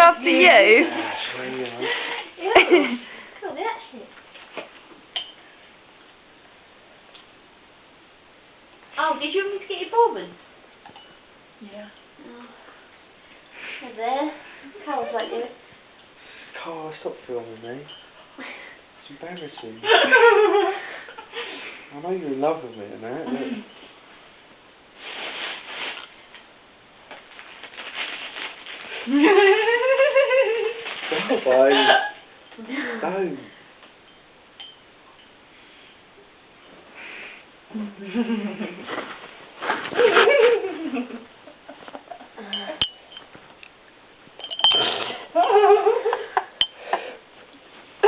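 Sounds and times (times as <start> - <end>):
sharp ringing clinks: 33.5 - 36.0, 42.4 - 43.4, 44.4 - 45.7.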